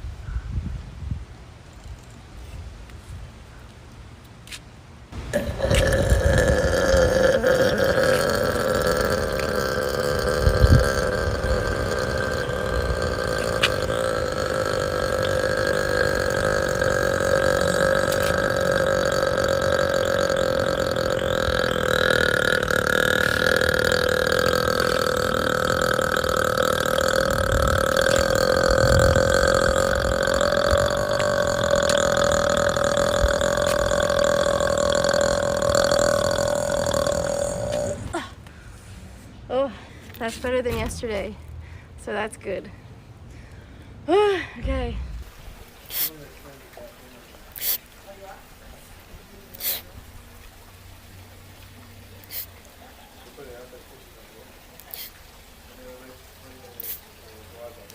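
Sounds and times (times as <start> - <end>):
woman's long burp: 5.2 - 38.4.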